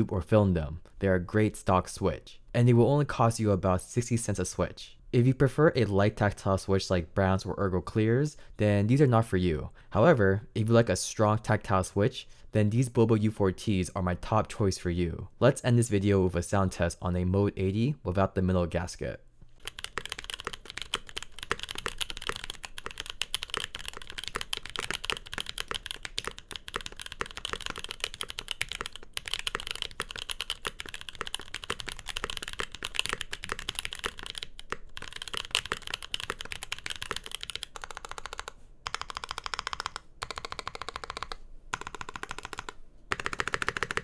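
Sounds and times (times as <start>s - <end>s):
typing on mechanical keyboard: 19.5s - 44.0s.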